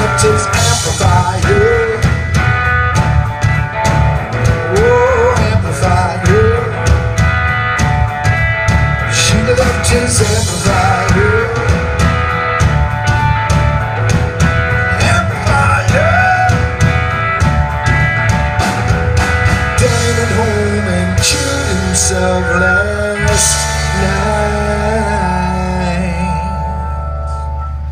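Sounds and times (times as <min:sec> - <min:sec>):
live rock band playing: 0:00.0 - 0:27.9.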